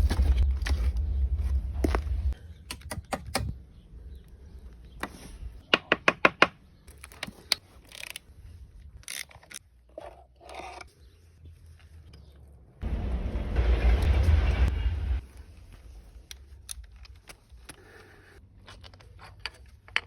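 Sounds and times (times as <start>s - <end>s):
metal tools clicking and scraping: 18.6s - 20.0s.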